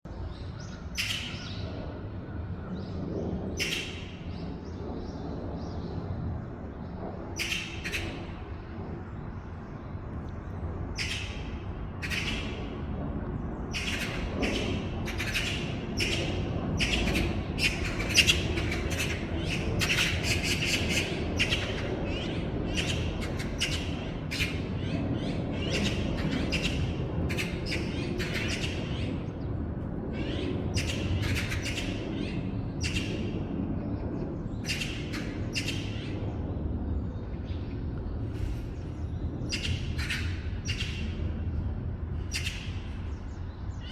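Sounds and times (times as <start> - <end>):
forest birds calling: 37.0 - 41.5.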